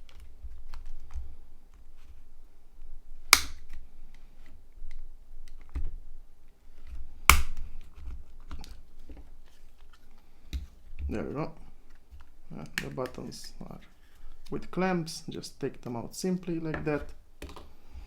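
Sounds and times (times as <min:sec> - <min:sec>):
sharp plastic snaps: 0:03.3 - 0:03.8, 0:07.2 - 0:08.8.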